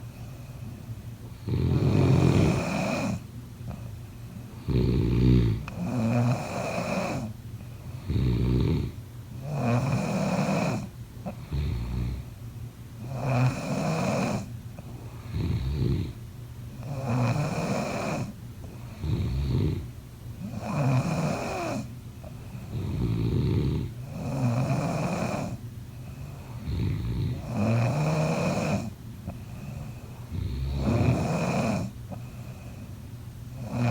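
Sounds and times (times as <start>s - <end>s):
person snoring: 1.5s - 3.2s, 4.6s - 7.3s.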